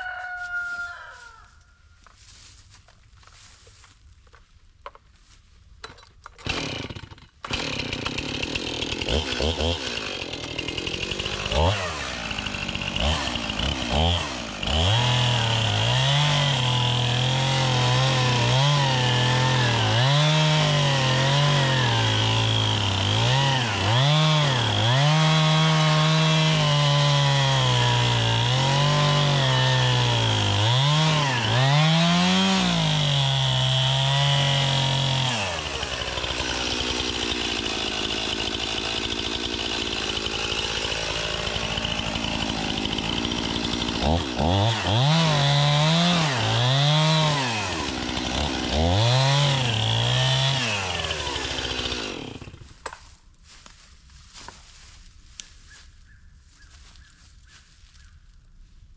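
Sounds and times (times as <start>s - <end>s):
chainsaw cutting into tree trunk: 6.4s - 53.1s.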